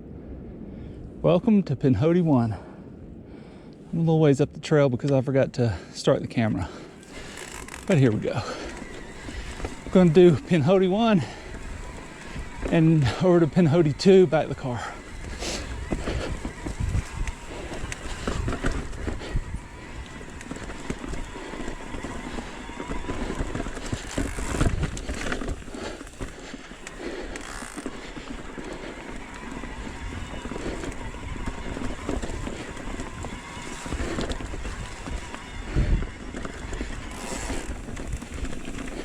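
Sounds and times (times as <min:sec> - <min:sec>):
low wind rumble on microphone: 0:00.0 - 0:05.0, 0:06.4 - 0:39.0
tyres on dirt and rock: 0:05.0 - 0:39.0
bike rattling: 0:06.4 - 0:39.0.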